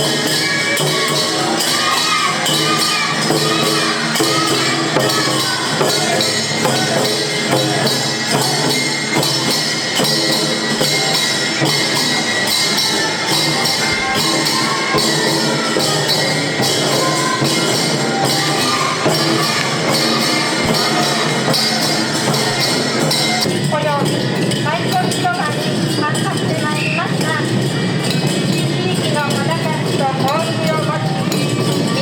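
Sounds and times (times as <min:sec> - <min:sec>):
taiko drums beating: 0:00.0 - 0:23.5
hand cymbals clashing: 0:00.0 - 0:32.0.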